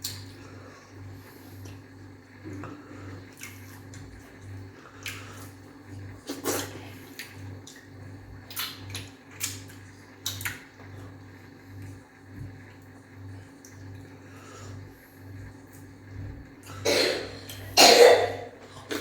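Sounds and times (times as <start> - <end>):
faint pulsing low hum: 0.0 - 19.0
lip smacks and slurps: 3.3 - 11.1.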